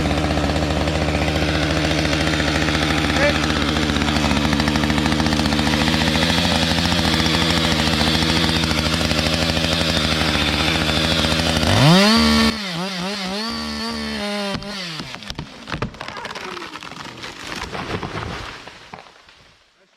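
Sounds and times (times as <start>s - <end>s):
chainsaw engine idling: 0.0s - 16.9s.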